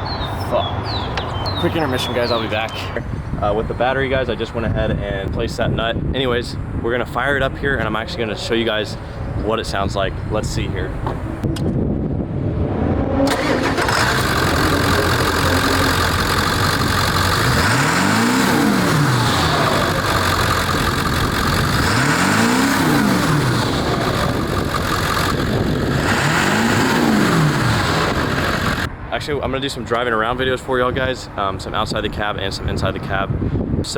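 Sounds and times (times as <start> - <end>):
diesel engine revving: 10.9 - 28.9
turbo whine: 11.0 - 28.9.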